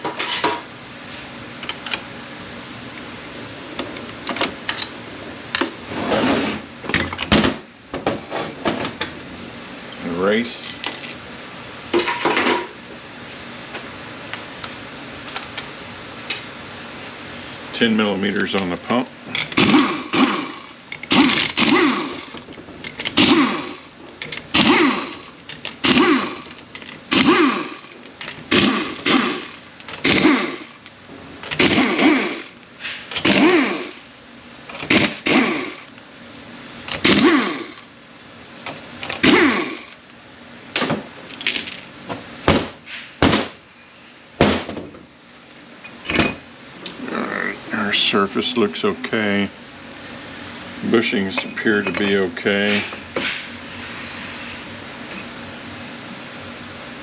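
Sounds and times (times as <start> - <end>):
power tool spinning bolts: 19.3 - 34.1, 34.7 - 35.9, 36.8 - 37.9, 39.0 - 40.0.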